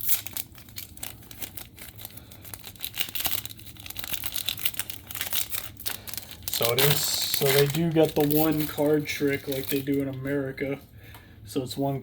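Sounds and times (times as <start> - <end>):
foil wrapper crinkling and tearing: 0.0 - 10.4.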